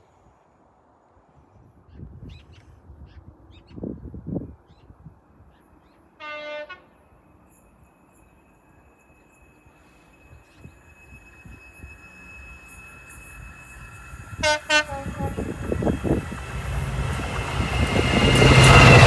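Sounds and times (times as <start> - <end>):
distant train horn: 6.2 - 7.2, 10.5 - 19.0
faint steady high tone: 7.0 - 19.0
low rumbling buffets: 11.5 - 19.0.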